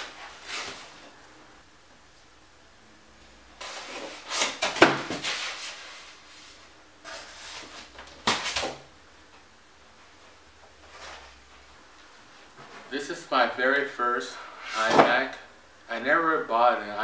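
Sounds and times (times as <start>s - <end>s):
cardboard scraping: 0.0s - 1.0s, 3.6s - 8.7s, 14.5s - 15.2s.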